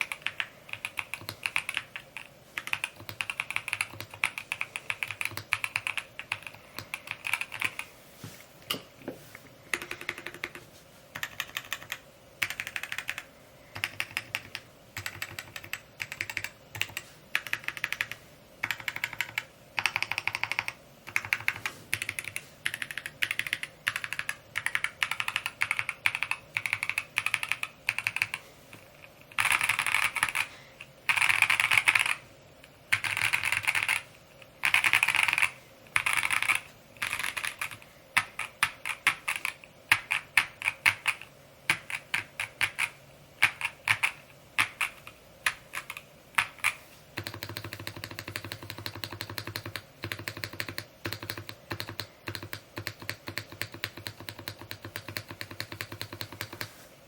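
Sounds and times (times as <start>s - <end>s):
mechanical keyboard typing: 0.0s - 7.9s, 9.7s - 30.5s, 31.1s - 32.2s, 32.9s - 56.8s.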